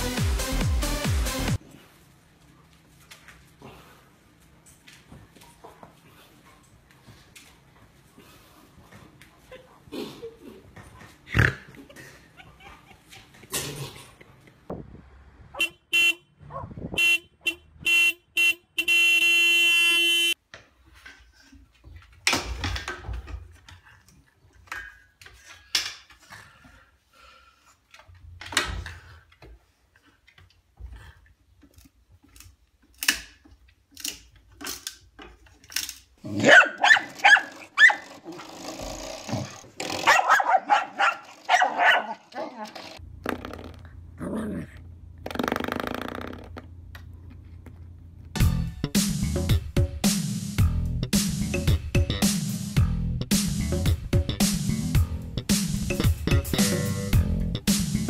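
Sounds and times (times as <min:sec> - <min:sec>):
dogs barking and growling: 0:36.2 - 0:43.0.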